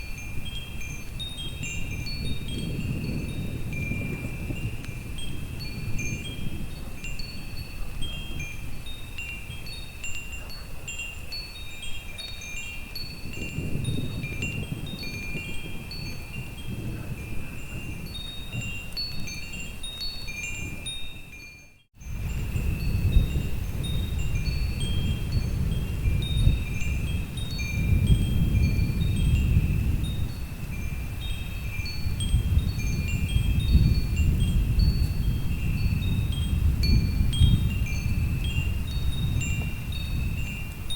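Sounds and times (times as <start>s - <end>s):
wind chimes tinkling: 0.0s - 40.9s
low storm rumble: 22.1s - 40.4s.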